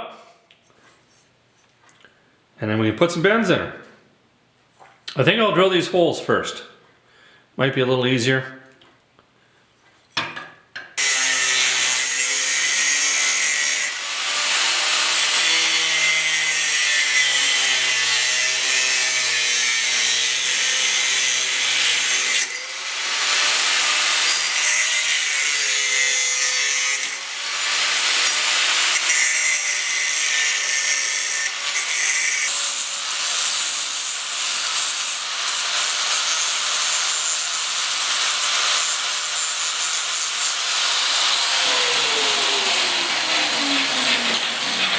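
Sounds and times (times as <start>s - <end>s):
electric drill boring metal: 11.0s - 44.9s.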